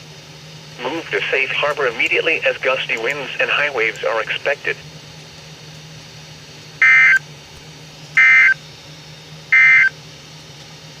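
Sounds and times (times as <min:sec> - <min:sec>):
shrill warbling data tones: 0:06.8 - 0:07.2, 0:08.2 - 0:08.6, 0:09.5 - 0:09.9.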